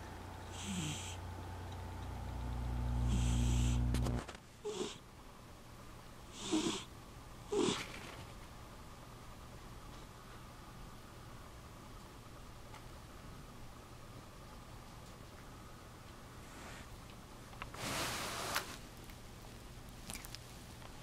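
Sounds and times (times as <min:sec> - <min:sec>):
cat purring: 0:00.4 - 0:05.0, 0:06.3 - 0:06.9, 0:07.5 - 0:08.2
snoring breaths: 0:00.5 - 0:01.2, 0:03.0 - 0:04.1, 0:04.7 - 0:05.0, 0:06.3 - 0:06.9.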